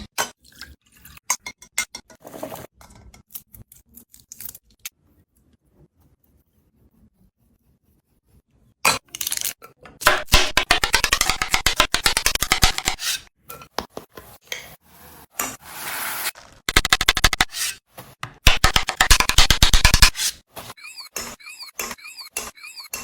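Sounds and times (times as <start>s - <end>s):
whisk clicking against bowl: 10.2s - 13.1s.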